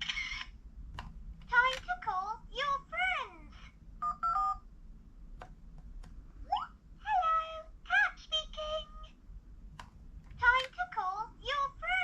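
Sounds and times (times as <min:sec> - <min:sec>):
toy phone keypad beeps: 0:04.0 - 0:04.6.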